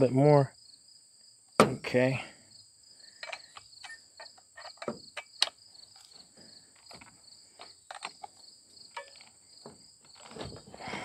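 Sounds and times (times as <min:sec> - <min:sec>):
insects chirring: 0:00.2 - 0:11.0
chainsaw handling clicks and knocks: 0:03.2 - 0:11.0.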